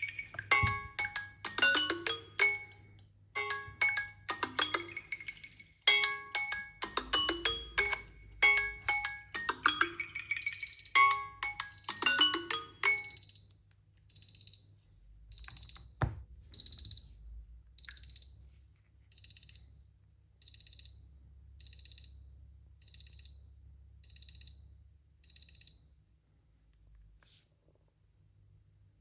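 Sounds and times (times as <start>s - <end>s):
high-pitched electronic beeps: 7.8s - 13.5s.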